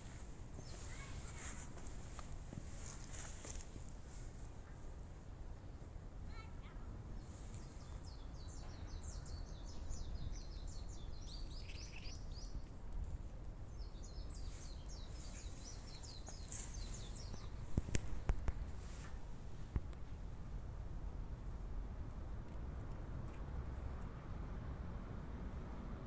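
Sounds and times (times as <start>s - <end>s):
small bird singing: 0.6s - 1.4s, 7.2s - 12.7s, 13.7s - 17.8s.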